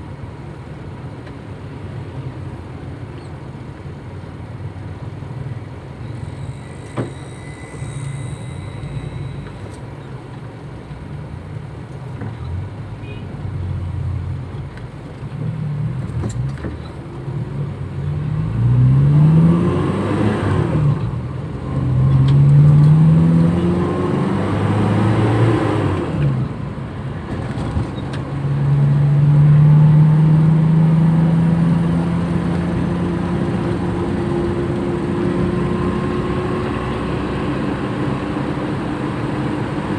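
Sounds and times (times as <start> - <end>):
engine accelerating through gears: 15.5 - 39.9.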